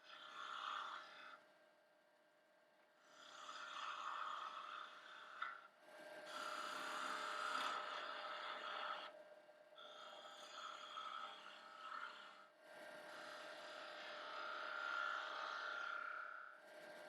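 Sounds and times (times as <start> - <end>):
wood lathe whining: 3.3 - 9.2, 9.8 - 17.0.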